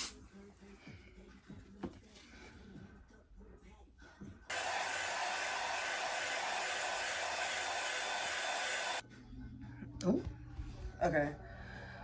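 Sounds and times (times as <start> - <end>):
hair dryer blowing: 4.5 - 9.0.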